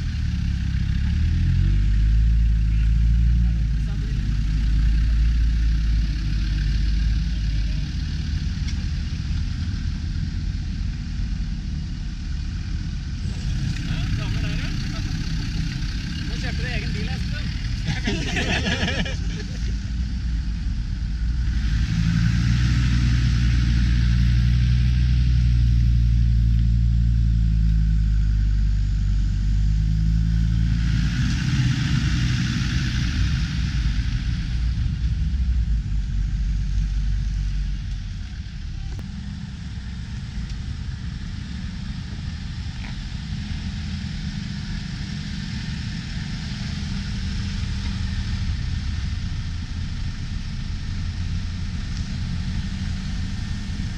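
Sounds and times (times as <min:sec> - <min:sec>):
off-road vehicle engine rumbling: 0:00.0 - 0:53.9.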